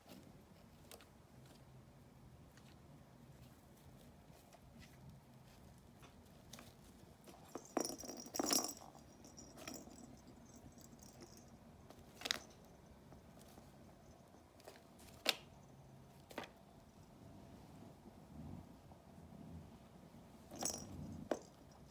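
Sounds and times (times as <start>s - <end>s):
jingly toy rattle: 7.4s - 11.6s, 20.5s - 21.9s.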